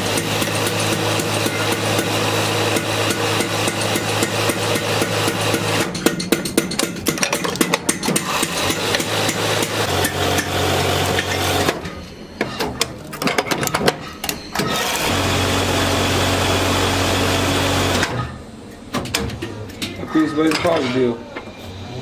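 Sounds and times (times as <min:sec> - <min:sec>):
motor-driven machine running: 0:08.1 - 0:11.8, 0:14.6 - 0:18.2.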